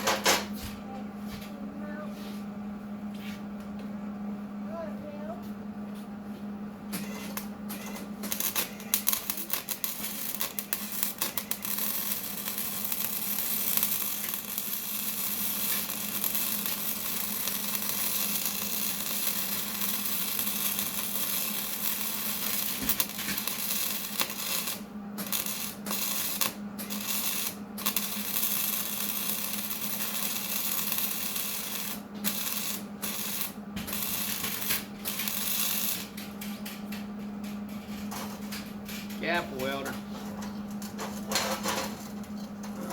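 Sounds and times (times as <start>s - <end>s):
welder arc crackling and hissing: 6.9s - 36.7s, 39.2s - 40.0s.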